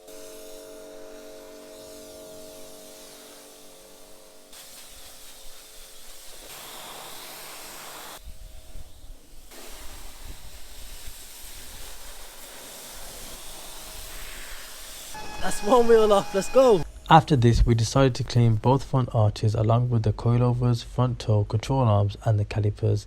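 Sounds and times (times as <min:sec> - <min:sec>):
pressure washer spraying water: 0:00.0 - 0:16.9.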